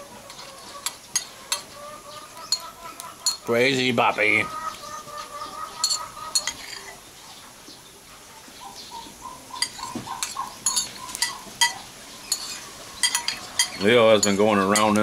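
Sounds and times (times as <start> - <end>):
spoon clinking against bowl: 2.5 - 3.5, 5.8 - 7.0, 9.6 - 15.0.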